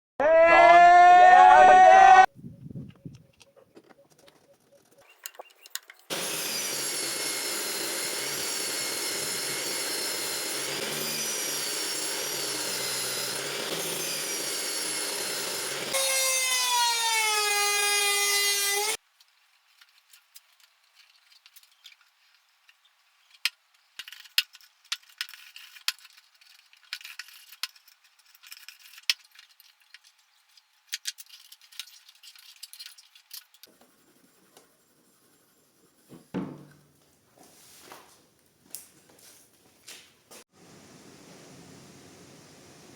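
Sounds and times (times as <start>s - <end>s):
power saw running: 6.1s - 19.0s.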